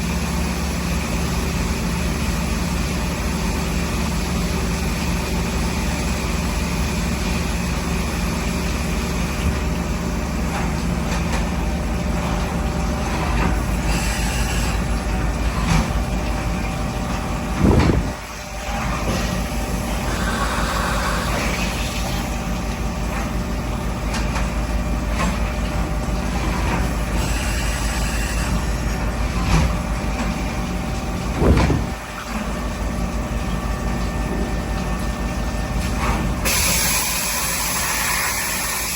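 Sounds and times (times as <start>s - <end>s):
machine hum with low tones: 0.0s - 38.8s
brief rising machine surge: 31.3s - 32.2s.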